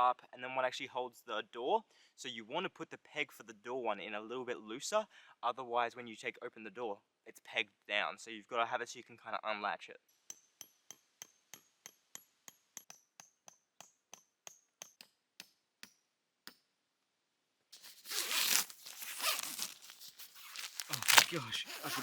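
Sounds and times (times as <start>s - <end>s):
metal tent peg being tapped: 10.3s - 16.6s
tent fabric rustling: 17.8s - 22.0s.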